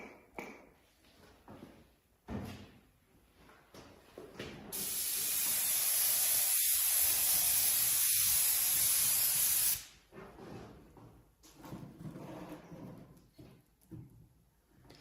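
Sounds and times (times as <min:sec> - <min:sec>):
airbrush air hiss: 0:04.8 - 0:10.0.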